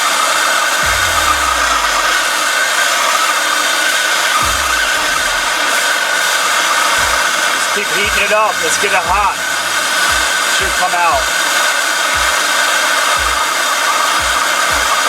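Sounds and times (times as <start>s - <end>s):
torch flame hissing: 0.0s - 15.0s
low rumbles: 0.8s - 2.7s, 4.4s - 5.6s.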